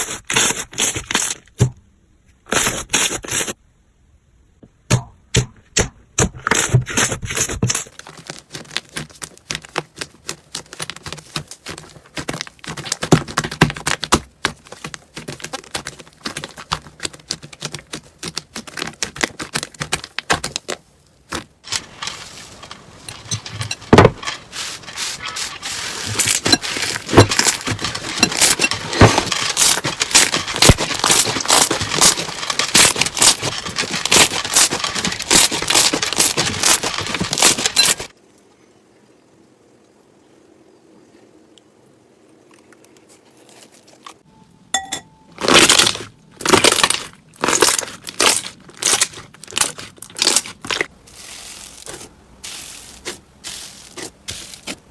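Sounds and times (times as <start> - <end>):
slime crackling and popping: 26.0 - 38.1, 45.4 - 52.1.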